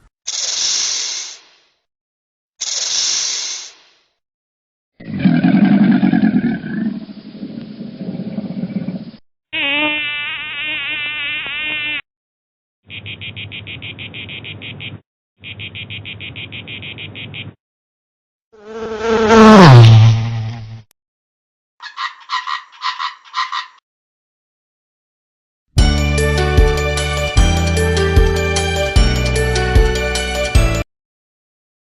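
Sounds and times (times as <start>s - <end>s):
warbling animal call: 5.0s - 7.2s
insect-like buzzing: 8.5s - 12.0s.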